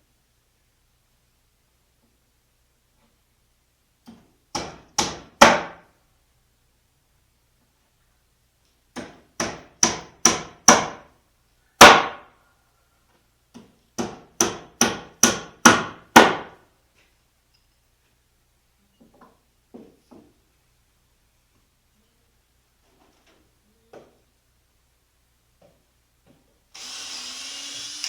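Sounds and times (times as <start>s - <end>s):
hammer driving nails into wood: 4.1s - 5.8s, 9.0s - 11.0s, 11.8s - 12.3s, 13.6s - 16.6s.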